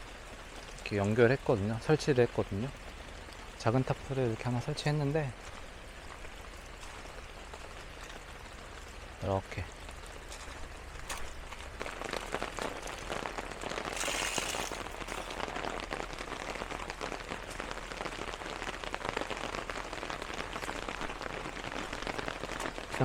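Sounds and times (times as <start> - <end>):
heavy rain falling: 0.0 - 23.0.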